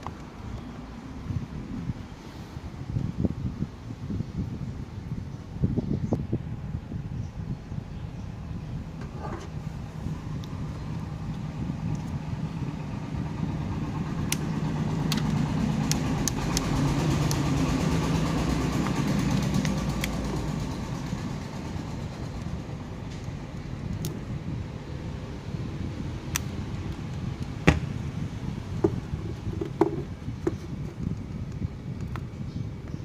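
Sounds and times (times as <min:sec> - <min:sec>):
passing vehicle engine hum: 0:08.8 - 0:30.8.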